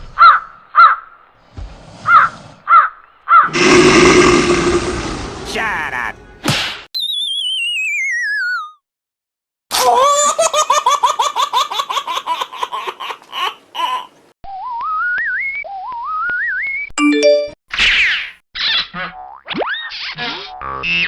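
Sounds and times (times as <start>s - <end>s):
cartoon falling whistle: 7.0s - 8.8s
high-pitched cartoon laugh: 9.7s - 14.1s.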